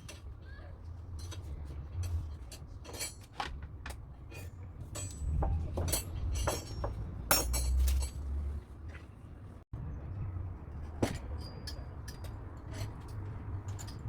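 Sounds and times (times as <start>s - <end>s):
metal parts clinking: 1.1s - 3.5s, 4.2s - 8.3s.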